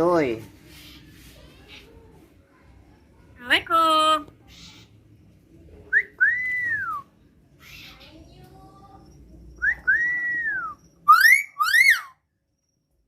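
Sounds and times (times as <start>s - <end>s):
myna whistling: 9.5s - 12.2s.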